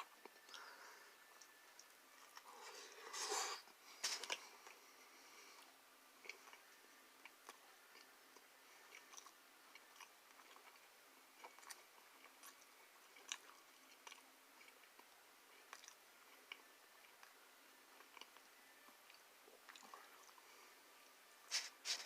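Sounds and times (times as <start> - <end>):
chewing food: 0.0 - 3.2, 4.0 - 21.2.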